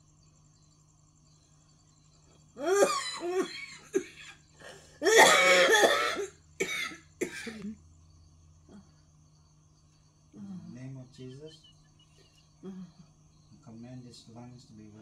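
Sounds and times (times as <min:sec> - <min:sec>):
woman coughing: 0:02.6 - 0:04.4, 0:05.0 - 0:07.8.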